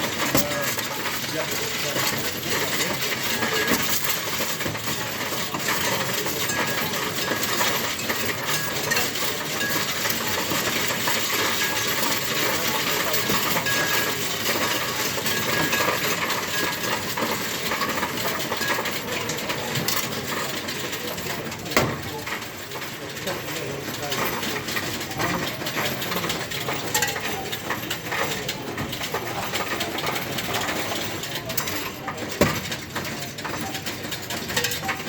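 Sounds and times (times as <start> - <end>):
coin counting machine clattering: 0.0 - 35.0.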